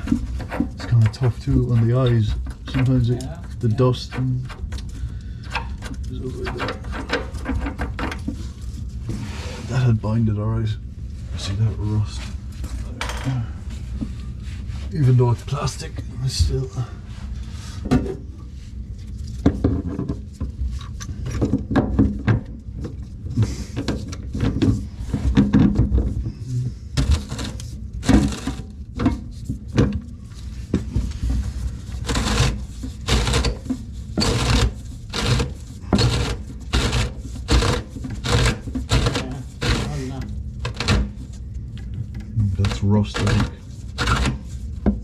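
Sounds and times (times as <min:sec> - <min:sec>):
hand tools scraping metal fittings: 0:32.0 - 0:41.2.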